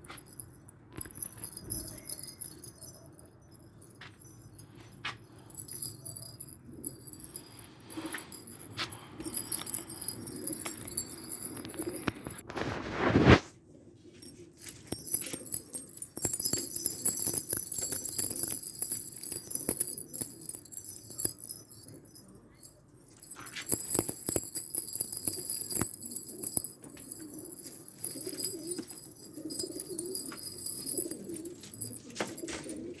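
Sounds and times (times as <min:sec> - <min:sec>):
high tinkling: 0:00.0 - 0:12.7, 0:14.1 - 0:33.0
pigeons cooing: 0:25.5 - 0:33.0.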